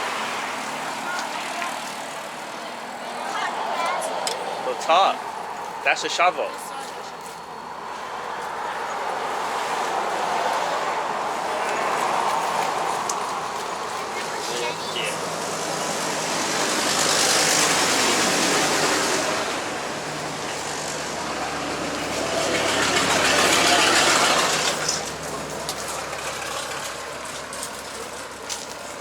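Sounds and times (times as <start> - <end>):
vehicles passing by: 0.0 - 29.0.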